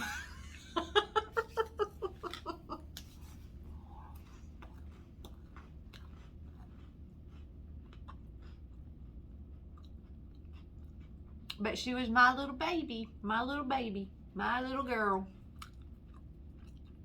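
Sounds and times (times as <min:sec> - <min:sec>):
woman laughing: 0:00.0 - 0:03.0
crunchy chewing: 0:01.6 - 0:11.6, 0:15.4 - 0:17.0.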